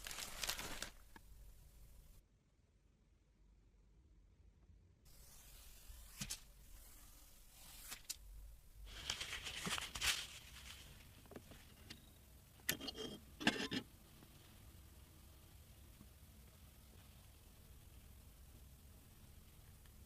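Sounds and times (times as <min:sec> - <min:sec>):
packaging rustling and scraping: 0:00.0 - 0:01.2, 0:08.9 - 0:11.8.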